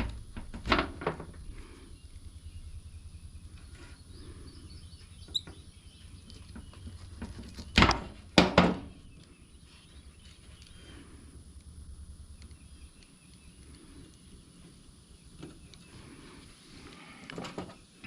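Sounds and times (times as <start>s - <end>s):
low steady hum: 0.0s - 18.0s
sharp knocks: 7.8s - 8.9s.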